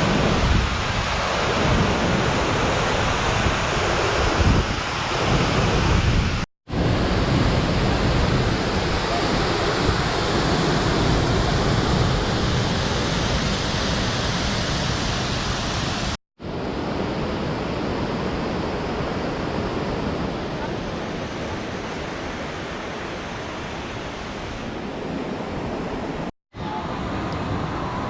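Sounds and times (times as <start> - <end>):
waterfall rushing: 7.0 - 16.2.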